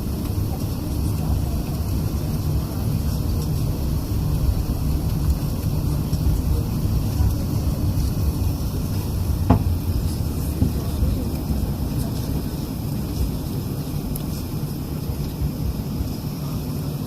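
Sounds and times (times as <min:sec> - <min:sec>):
distant jet engines rumbling: 0:00.0 - 0:17.0
short knock: 0:09.5 - 0:09.7.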